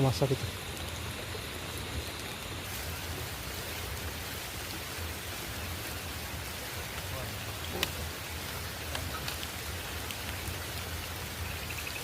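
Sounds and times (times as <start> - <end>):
steady rain: 0.0 - 12.0.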